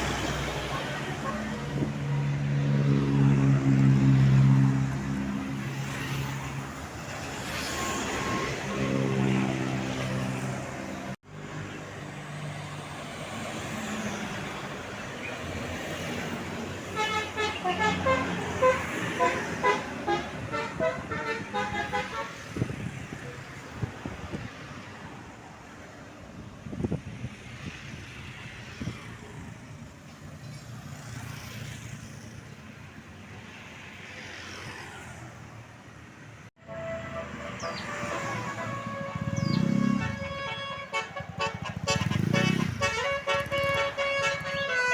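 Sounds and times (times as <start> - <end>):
road traffic: 0.0 - 44.9
vehicles passing: 0.0 - 44.9
bus diesel engine: 36.4 - 44.9.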